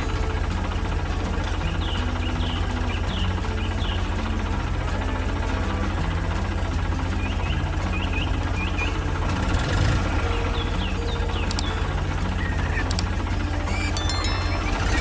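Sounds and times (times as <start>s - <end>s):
tractor engine idling: 0.0s - 15.0s
short high chirps: 13.6s - 15.0s.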